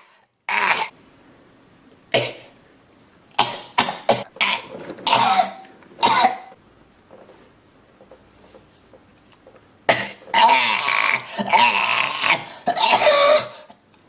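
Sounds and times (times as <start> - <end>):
person coughing: 2.1 - 2.5, 3.4 - 4.4, 5.1 - 6.6, 9.9 - 10.2, 11.1 - 13.8.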